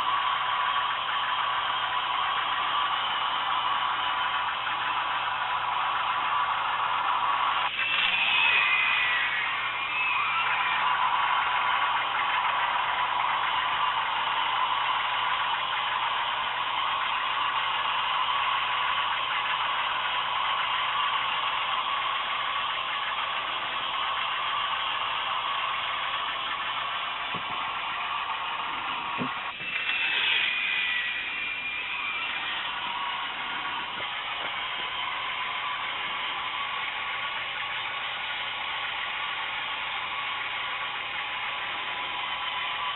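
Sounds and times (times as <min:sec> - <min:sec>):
chain lift mechanical whirr: 0:00.1 - 0:17.9, 0:22.7 - 0:39.1
higher whine: 0:01.6 - 0:14.8, 0:27.3 - 0:37.3.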